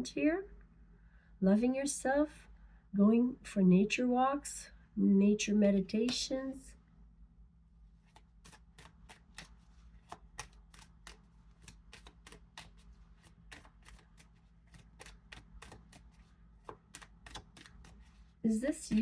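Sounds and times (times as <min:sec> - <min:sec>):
cards being shuffled: 0:08.0 - 0:19.0.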